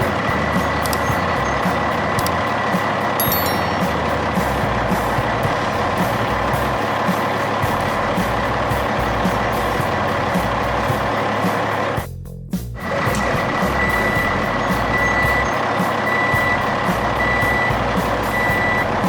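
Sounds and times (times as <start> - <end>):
steady-beat backing track: 0.0 - 10.0
heavy truck engine running: 0.0 - 12.1, 12.8 - 19.0.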